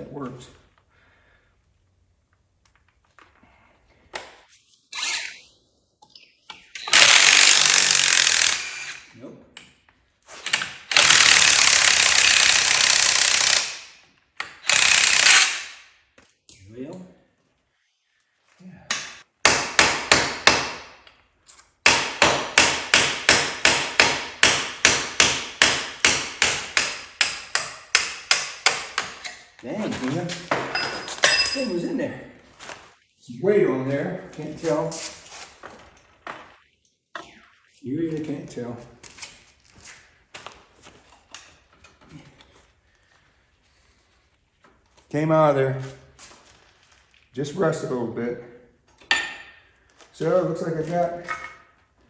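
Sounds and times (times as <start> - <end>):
power tool running loudly: 6.9 - 9.0, 10.9 - 13.7
tool clicks and clinks on metal: 30.7 - 31.9, 50.8 - 51.7.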